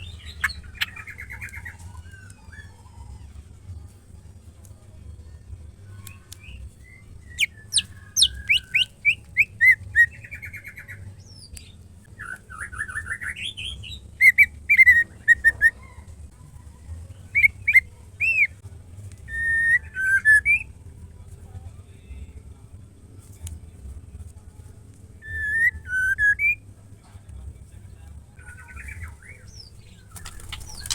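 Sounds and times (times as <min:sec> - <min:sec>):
songbird calling and whistling: 0:00.0 - 0:02.8, 0:06.1 - 0:11.6, 0:12.2 - 0:15.9, 0:17.3 - 0:18.6, 0:19.3 - 0:20.7, 0:25.2 - 0:26.6.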